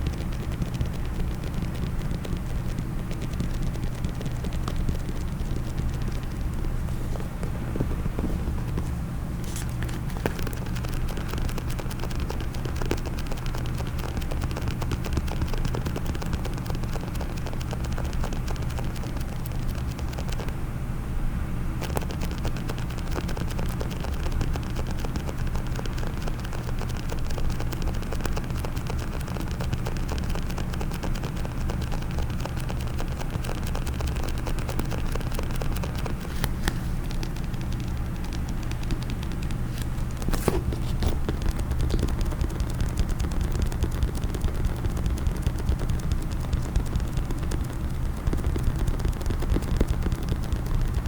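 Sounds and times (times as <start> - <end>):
fingernails tapping on hard case: 37.2 - 51.0.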